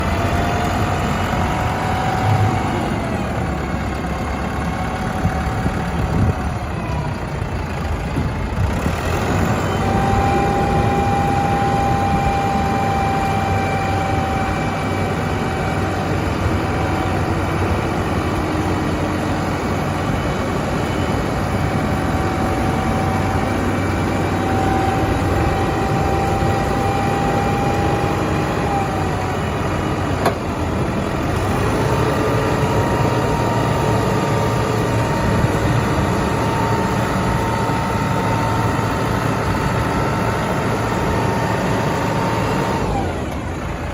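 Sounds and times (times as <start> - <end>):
heavy diesel engine running: 0.0 - 43.9
high whining tone: 1.2 - 4.4.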